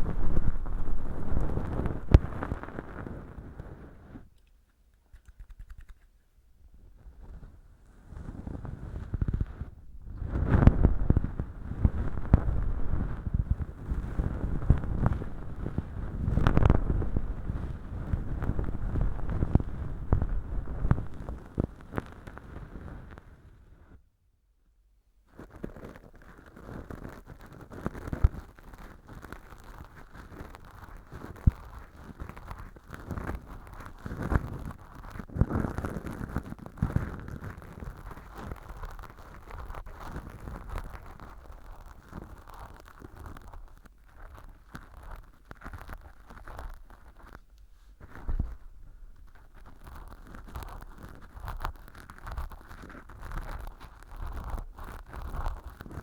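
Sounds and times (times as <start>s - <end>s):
ear pick scraping: 0.0s - 4.2s, 8.2s - 22.4s
sharp clicks: 4.4s - 6.1s.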